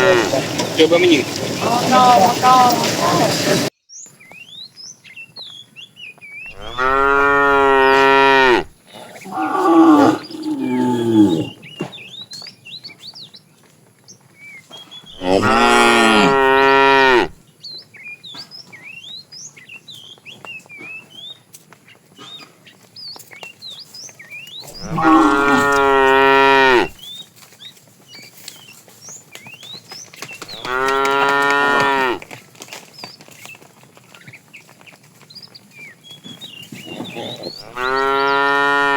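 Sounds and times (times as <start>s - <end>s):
cattle mooing: 0.0s - 0.6s, 6.5s - 11.6s, 15.2s - 17.4s, 24.7s - 27.0s, 30.6s - 32.2s, 36.9s - 38.9s.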